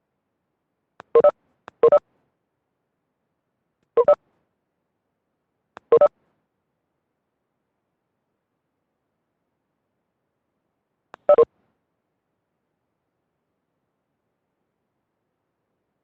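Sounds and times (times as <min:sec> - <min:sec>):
electronic double beeps: 0:11.3 - 0:11.5.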